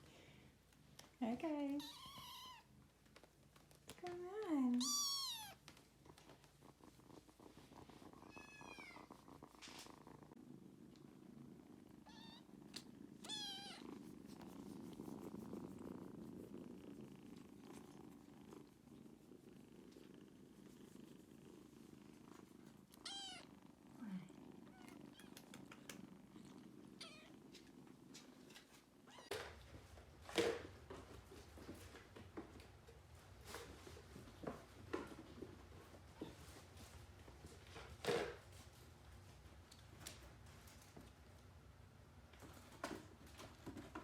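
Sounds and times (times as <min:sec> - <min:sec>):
kittens purring: 0:00.0 - 0:44.0
kitten meows: 0:01.8 - 0:02.6, 0:04.8 - 0:05.6, 0:13.2 - 0:13.8, 0:23.0 - 0:23.5.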